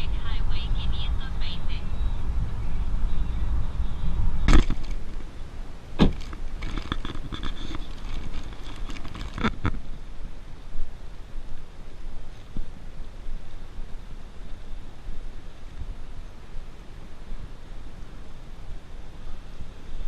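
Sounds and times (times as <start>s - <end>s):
car cabin road noise: 0.0s - 10.4s
light rattling: 6.0s - 9.9s.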